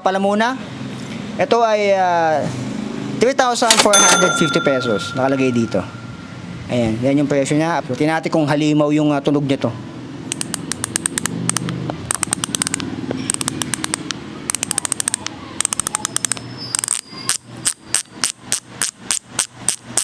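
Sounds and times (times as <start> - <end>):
bicycle freehub clicking: 10.3 - 20.0.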